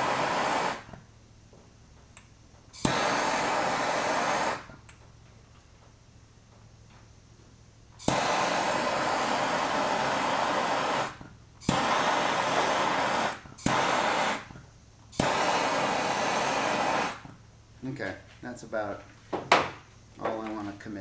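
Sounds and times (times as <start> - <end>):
gas torch hissing flame: 0.0 - 1.1, 2.7 - 4.9, 8.0 - 18.0
torch ignition click: 2.1 - 5.0, 8.0 - 14.6, 15.2 - 17.3.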